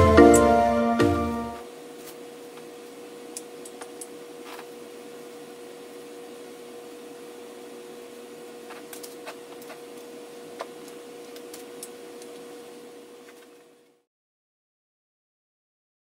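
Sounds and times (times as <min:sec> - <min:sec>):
ceiling fan motor hum: 0:00.0 - 0:14.1
faint fan clicks: 0:02.0 - 0:04.2, 0:08.6 - 0:12.5.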